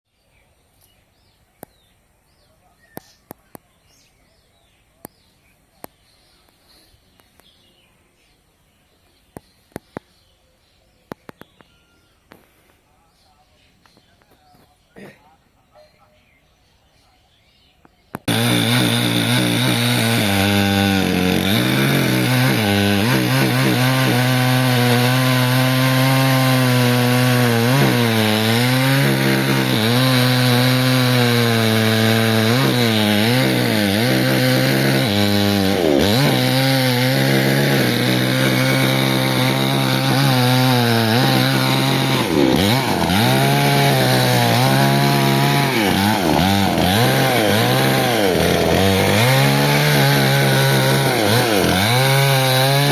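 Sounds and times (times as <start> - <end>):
chainsaw cutting log: 18.2 - 52.9.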